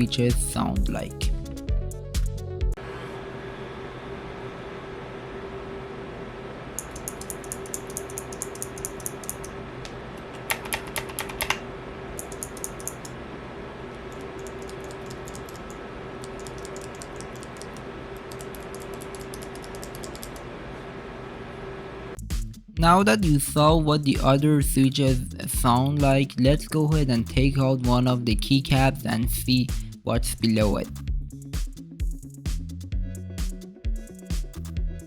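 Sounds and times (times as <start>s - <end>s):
steady hum: 2.7s - 30.8s
mechanical keyboard typing: 6.8s - 9.5s, 10.4s - 11.6s, 12.2s - 13.2s, 14.1s - 20.4s.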